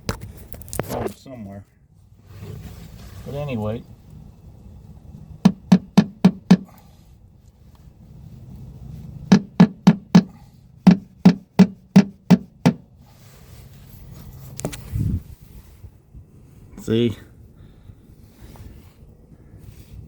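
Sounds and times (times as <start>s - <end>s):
hammer striking metal pin: 5.5s - 6.7s, 9.3s - 12.8s.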